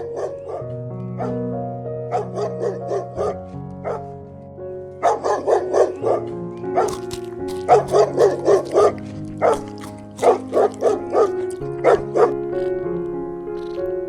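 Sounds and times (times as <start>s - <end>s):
dog yipping: 0.0s - 1.4s, 2.1s - 4.1s, 5.0s - 6.2s, 6.8s - 12.4s
soft background music: 0.0s - 14.0s.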